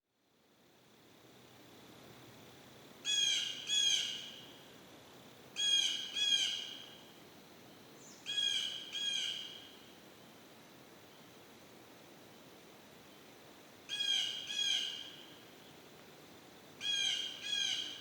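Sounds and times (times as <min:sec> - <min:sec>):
blue jay squawking calls: 0:13.9 - 0:15.1, 0:16.8 - 0:18.0.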